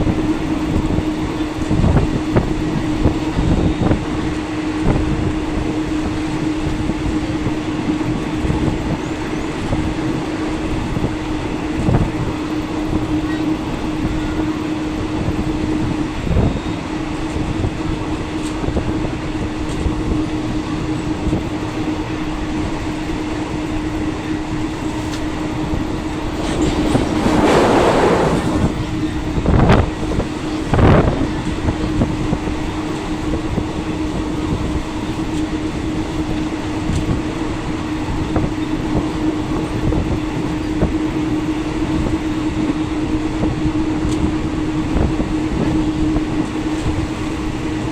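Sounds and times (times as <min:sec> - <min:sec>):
train rumble inside coach: 0:00.0 - 0:47.9
rush of noise: 0:24.2 - 0:30.8.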